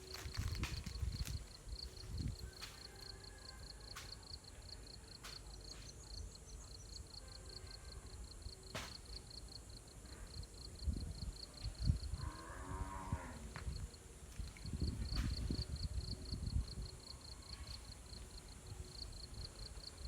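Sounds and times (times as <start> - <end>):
insects chirping: 0.0 - 20.0
cow mooing: 12.2 - 13.4.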